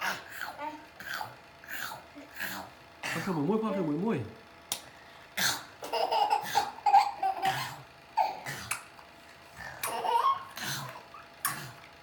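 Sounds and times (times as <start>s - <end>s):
baby laughing: 5.8s - 8.8s, 9.8s - 11.2s.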